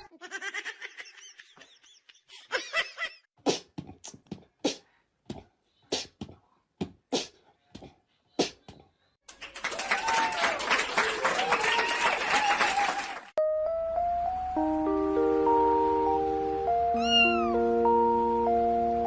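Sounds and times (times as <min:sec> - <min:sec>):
high squeaky sounds: 0:16.9 - 0:17.6.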